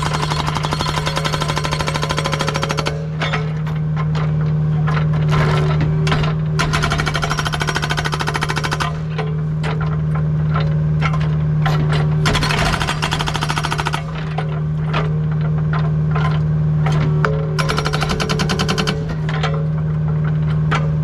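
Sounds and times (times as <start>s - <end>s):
diesel engine running: 0.0s - 21.0s
hydraulic breaker hammer pounding rock: 0.0s - 21.0s.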